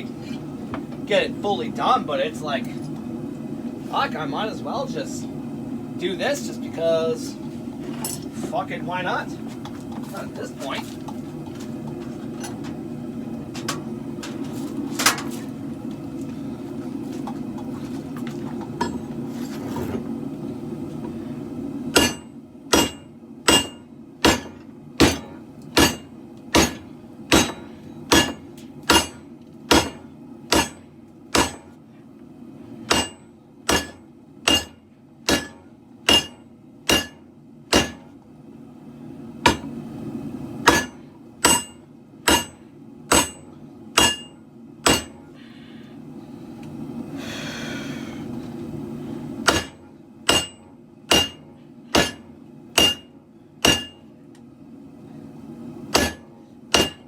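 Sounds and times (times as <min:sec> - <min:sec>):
hammer striking steel on anvil: 0:22.0 - 0:31.7, 0:32.9 - 0:38.1, 0:39.4 - 0:39.7, 0:40.6 - 0:45.3, 0:49.4 - 0:54.1, 0:55.9 - 0:57.0.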